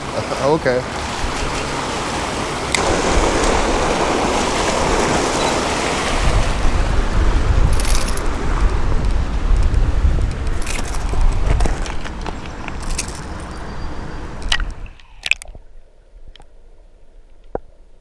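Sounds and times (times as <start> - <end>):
water rushing over a cascade: 0.0 - 9.3.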